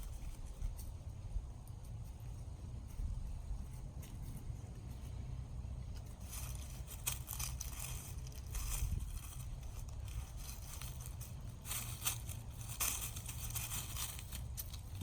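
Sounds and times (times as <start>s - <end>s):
steady low rumble: 0.0s - 15.0s
puppy crinkling and scraping: 5.9s - 15.0s.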